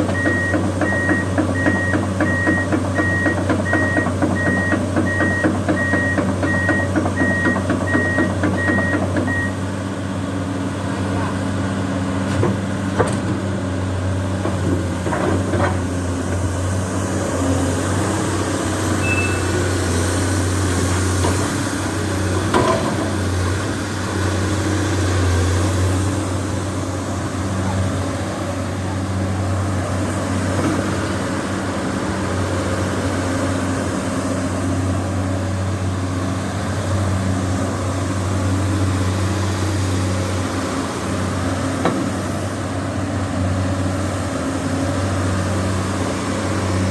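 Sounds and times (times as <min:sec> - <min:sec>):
diesel excavator engine running: 0:00.0 - 0:46.9.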